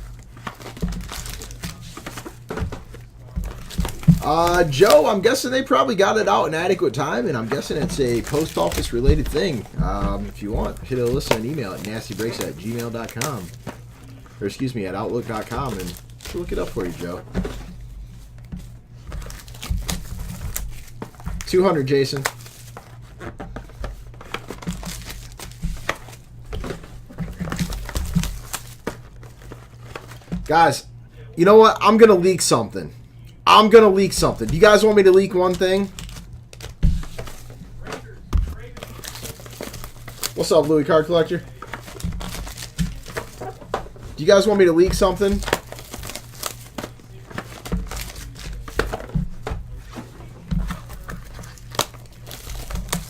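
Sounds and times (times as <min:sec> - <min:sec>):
wrappers crinkling: 0:00.0 - 0:30.8, 0:33.5 - 0:53.0
trading cards being handled: 0:00.0 - 0:31.0, 0:33.1 - 0:53.0
low steady hum: 0:00.0 - 0:53.0.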